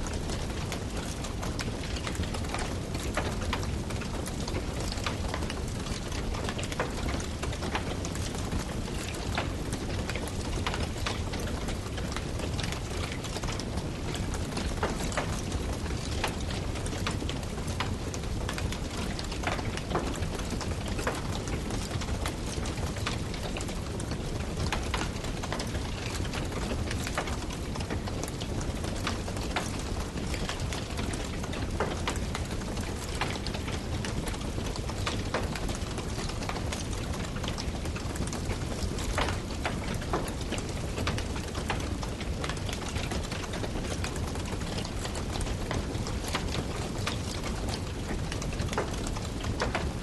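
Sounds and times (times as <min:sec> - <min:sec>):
low rumble of flames: 0:00.0 - 0:50.0
firewood crackling and popping: 0:00.1 - 0:50.0.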